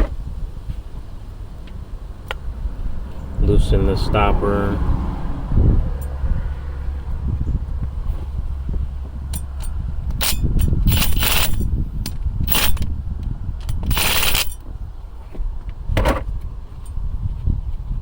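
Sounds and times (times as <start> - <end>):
low wind rumble: 0.0 - 18.0
scraping rattles: 9.1 - 14.8
metal tool clinking: 9.3 - 13.0, 13.6 - 14.7.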